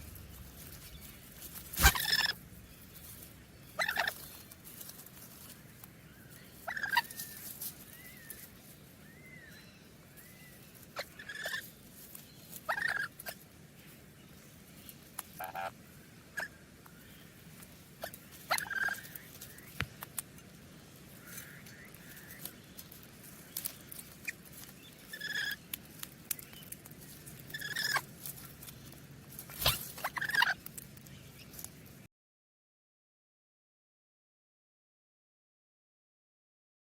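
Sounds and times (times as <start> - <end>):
parrots chirping and squawking: 0.0 - 2.4, 3.8 - 4.4, 6.6 - 7.4, 11.0 - 11.6, 12.7 - 13.4, 18.0 - 19.2, 25.0 - 25.6, 27.5 - 28.1, 29.5 - 30.6.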